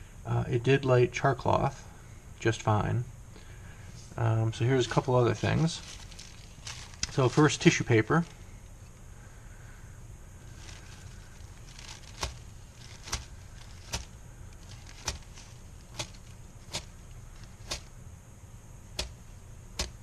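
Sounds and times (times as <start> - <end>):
spark wheel striking flint: 11.6 - 17.9.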